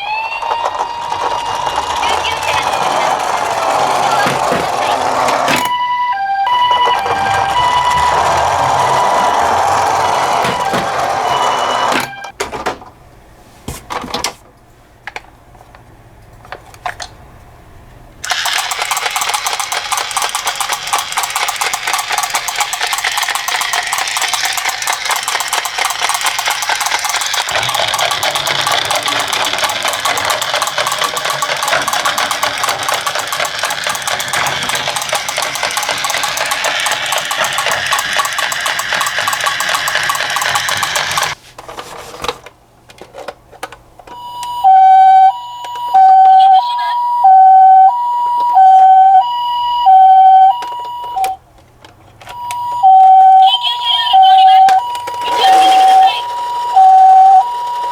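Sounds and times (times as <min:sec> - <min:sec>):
toy cars rolling with rattle: 0:00.0 - 0:05.7, 0:06.5 - 0:12.3, 0:18.2 - 0:43.8, 0:54.5 - 0:57.9.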